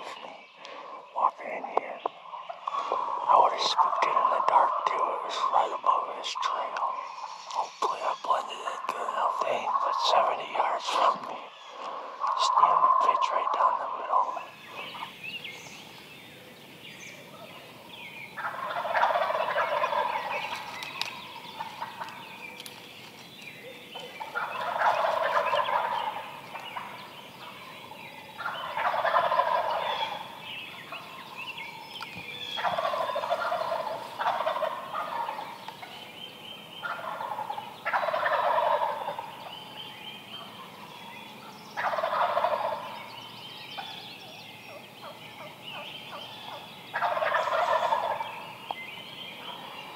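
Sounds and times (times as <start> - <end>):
turkeys gobbling: 1.7 - 7.7, 11.8 - 15.1, 18.4 - 22.3, 24.0 - 31.8, 32.5 - 36.0, 36.8 - 39.5, 41.8 - 43.1, 45.0 - 48.5.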